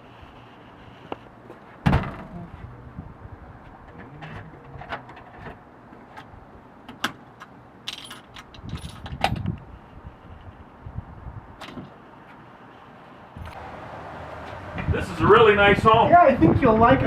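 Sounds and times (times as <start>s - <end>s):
lock clicking and rattling: 6.9s - 9.6s
keys jangling: 7.9s - 9.2s.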